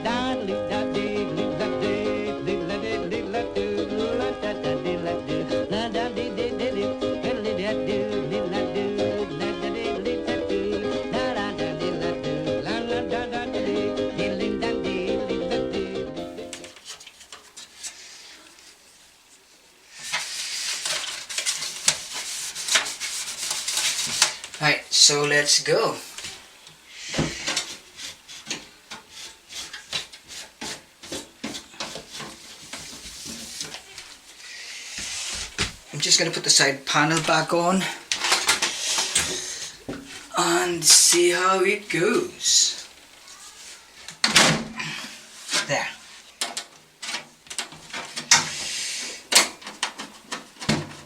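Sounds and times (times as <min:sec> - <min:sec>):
rubbing and scraping of computer parts: 0:16.5 - 0:18.9, 0:19.9 - 0:26.4, 0:27.2 - 0:34.3, 0:37.1 - 0:41.3, 0:45.2 - 0:51.0.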